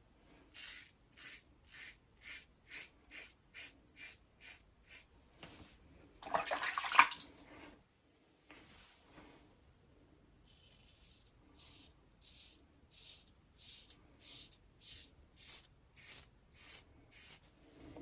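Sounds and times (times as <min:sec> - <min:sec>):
razor scraping stubble: 0:10.6 - 0:17.5.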